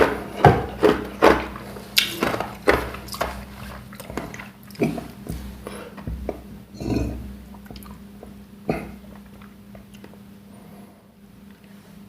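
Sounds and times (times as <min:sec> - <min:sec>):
chewing and mouth noises: 0:06.9 - 0:10.2.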